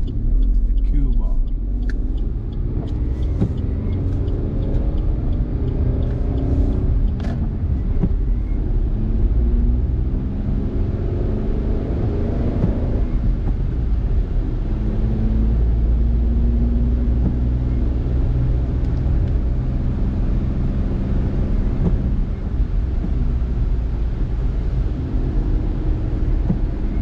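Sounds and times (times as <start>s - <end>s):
faint ticks: 0.0s - 8.3s
car engine and tyre rumble: 0.0s - 27.0s.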